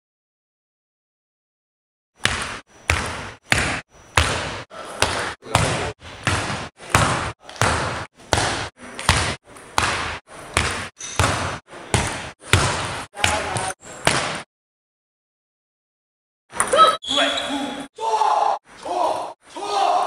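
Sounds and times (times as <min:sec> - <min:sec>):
table tennis ball bouncing: 0:02.2 - 0:14.4.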